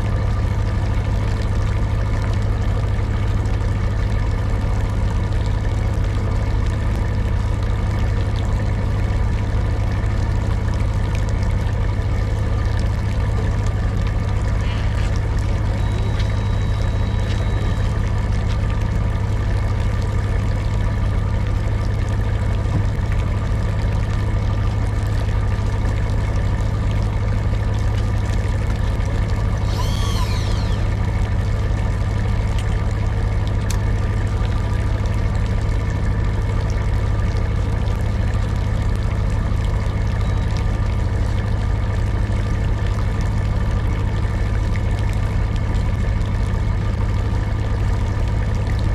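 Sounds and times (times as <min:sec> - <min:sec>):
boat engine idling: 0:00.0 - 0:48.9
high warbling sound: 0:29.6 - 0:31.0.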